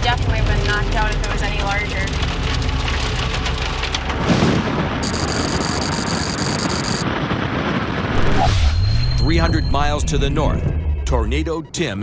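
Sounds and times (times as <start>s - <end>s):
heavy rain on a vehicle: 0.0s - 7.0s
road noise: 0.0s - 11.6s.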